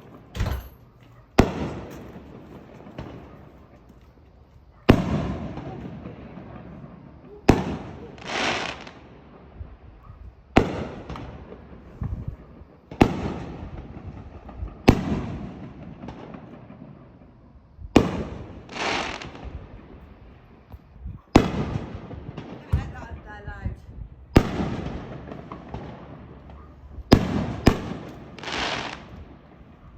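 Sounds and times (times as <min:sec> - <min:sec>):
fireworks bangs: 0:00.0 - 0:04.1, 0:04.8 - 0:29.9
hissing crackling rush: 0:18.6 - 0:19.4, 0:28.2 - 0:29.1.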